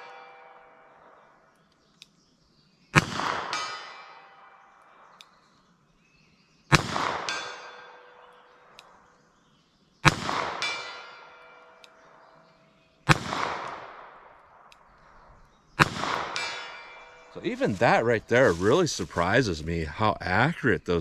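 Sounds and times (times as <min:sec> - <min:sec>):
steel target ringing: 0:03.0 - 0:04.8, 0:06.7 - 0:08.3, 0:10.1 - 0:12.3, 0:15.8 - 0:18.8
revolver shots: 0:15.8 - 0:17.6.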